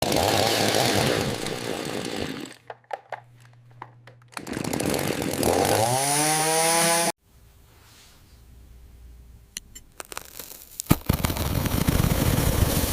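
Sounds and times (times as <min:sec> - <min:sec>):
chainsaw cutting: 0:00.0 - 0:02.6, 0:04.4 - 0:07.1.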